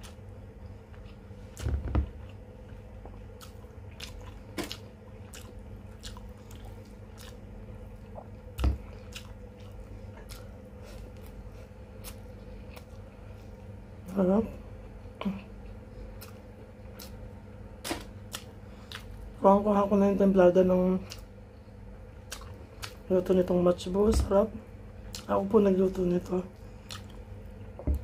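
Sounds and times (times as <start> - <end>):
steady low hum: 0.0 - 28.0
close chewing and biting: 0.9 - 13.1, 18.3 - 19.2, 22.2 - 23.1, 26.7 - 27.2.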